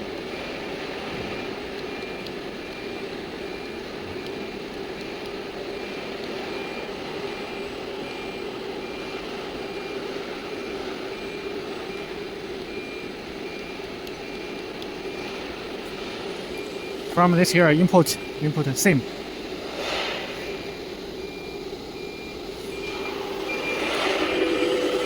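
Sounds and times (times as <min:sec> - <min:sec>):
machine humming: 0:22.5 - 0:25.0.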